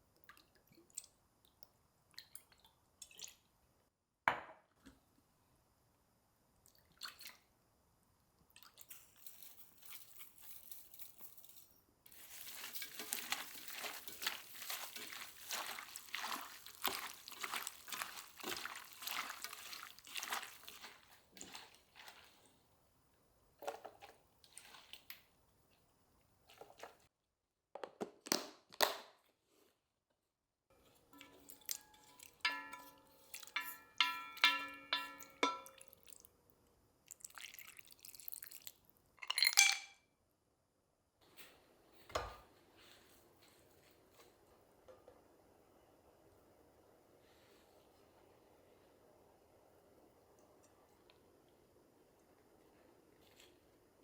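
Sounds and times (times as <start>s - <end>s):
crackling liquid sizzle: 12.1s - 25.9s
kitchen clicks and taps: 31.1s - 35.9s.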